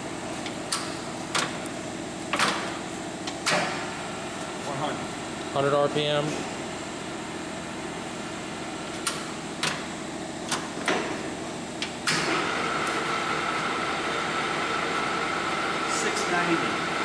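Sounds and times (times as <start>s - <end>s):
lathe control clicks and clunks: 2.3s - 4.0s, 9.0s - 13.8s
lathe spindle high whine: 12.4s - 17.0s.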